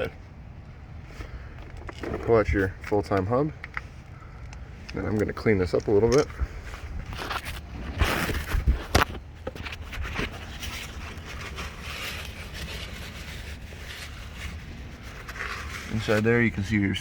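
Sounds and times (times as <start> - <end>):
rubbing and scraping wheel hub: 1.1 - 17.0.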